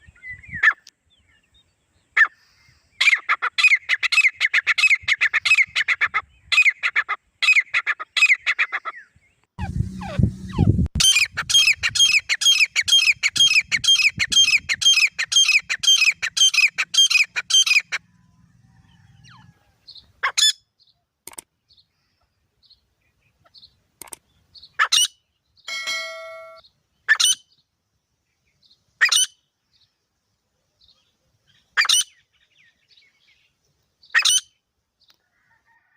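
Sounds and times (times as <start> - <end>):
francolins calling: 2.1 - 20.7, 21.7 - 27.7.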